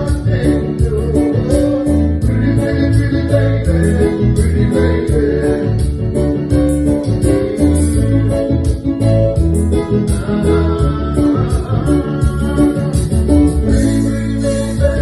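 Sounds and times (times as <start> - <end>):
live band playing: 0.0 - 15.0.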